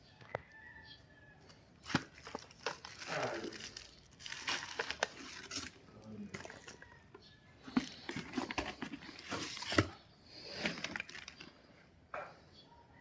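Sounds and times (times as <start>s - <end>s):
packaging rustling: 1.8s - 11.6s.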